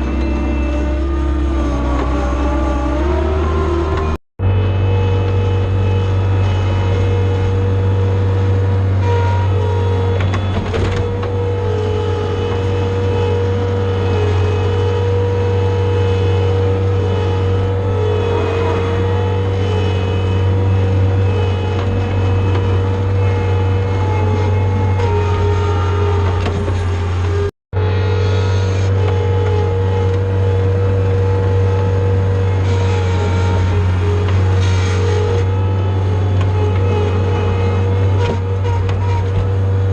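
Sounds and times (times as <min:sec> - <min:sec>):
diesel engine running: 0:00.0 - 0:39.9
steady whine: 0:00.0 - 0:39.9.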